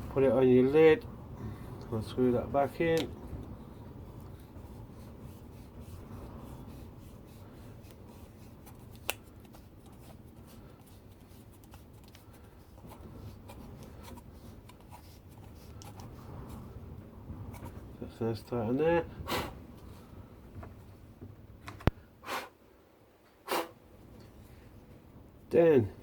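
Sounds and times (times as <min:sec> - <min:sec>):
rubbing and handling ticks: 0:02.6 - 0:16.8.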